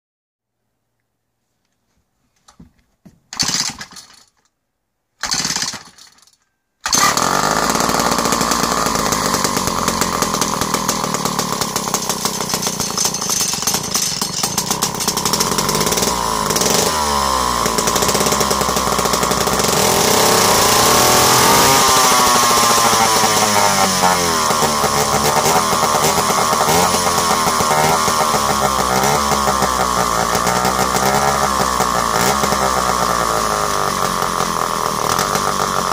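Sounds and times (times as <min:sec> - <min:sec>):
chainsaw engine revving: 0:03.3 - 0:04.4, 0:05.2 - 0:35.9
chainsaw starter pulls: 0:03.3 - 0:04.5, 0:05.2 - 0:35.9.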